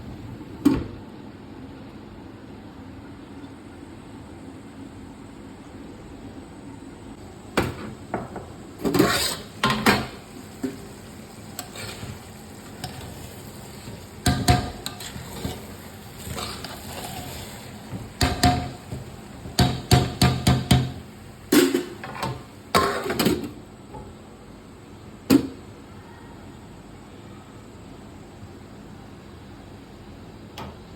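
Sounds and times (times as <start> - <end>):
steady low hiss: 3.8 - 25.3
metal utensils clanking: 11.5 - 18.9.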